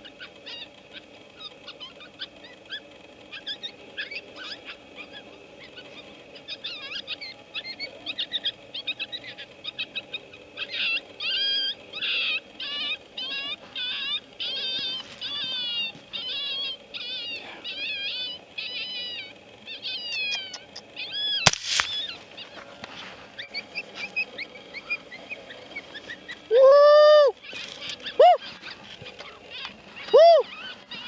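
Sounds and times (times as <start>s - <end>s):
drawn-out rising and falling call: 0.0s - 22.8s, 23.4s - 31.0s
high wavering yips: 20.0s - 22.1s
suppressed rifle shot: 21.5s - 22.2s.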